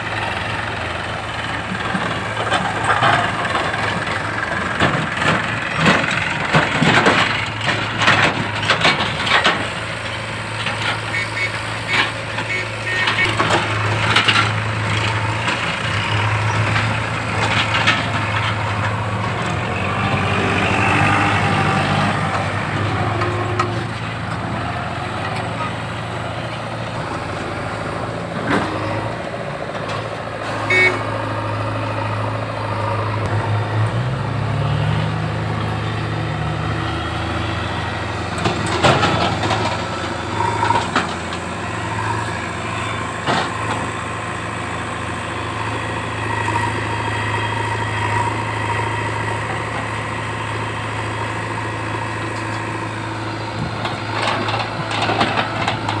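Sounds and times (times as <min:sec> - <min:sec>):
heavy diesel engine running: 0:00.0 - 0:56.0
metal clanks and knocks: 0:01.7 - 0:11.1, 0:38.3 - 0:44.0.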